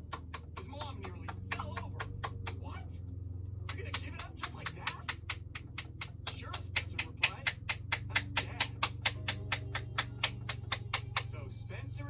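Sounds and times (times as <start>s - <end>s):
low steady hum: 0.0s - 12.0s
rapid sharp clicks: 3.7s - 11.3s.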